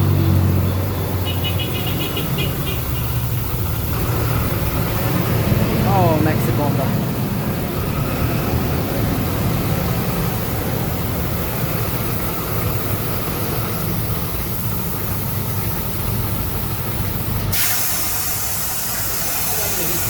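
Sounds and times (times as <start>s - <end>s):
diesel bus engine running: 0.0s - 20.0s
compressed air hiss: 10.2s - 20.0s.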